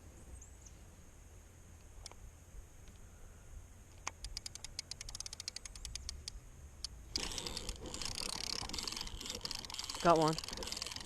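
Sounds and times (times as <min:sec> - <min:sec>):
fishing reel clicking: 0:04.2 - 0:06.3, 0:07.2 - 0:11.0.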